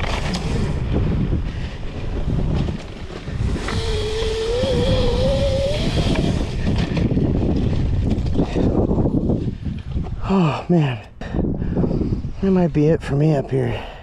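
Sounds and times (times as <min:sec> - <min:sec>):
wind buffeting microphone: 0:00.0 - 0:14.0
electric motor whining: 0:03.4 - 0:06.8.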